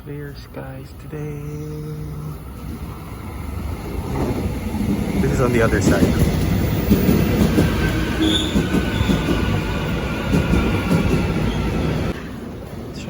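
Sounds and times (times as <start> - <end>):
subway train rumbling on rails: 0.0 - 13.0
high wheel squeal: 2.9 - 10.2.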